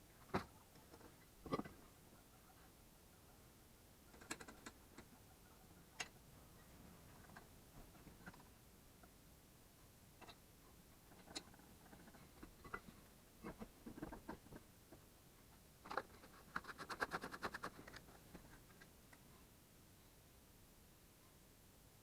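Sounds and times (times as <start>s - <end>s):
rapid clicks: 4.1s - 5.1s.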